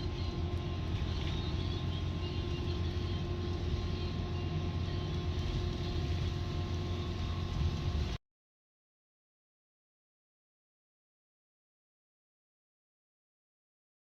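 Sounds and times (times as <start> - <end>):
constant hum with fixed tones: 0.0 - 8.2
vehicle interior rumble: 0.0 - 8.2.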